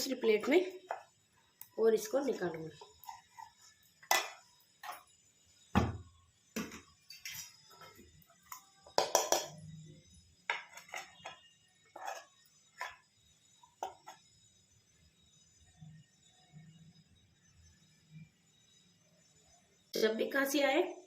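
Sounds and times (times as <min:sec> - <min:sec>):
spoon clinking against pan: 0:04.0 - 0:04.4, 0:08.9 - 0:09.6.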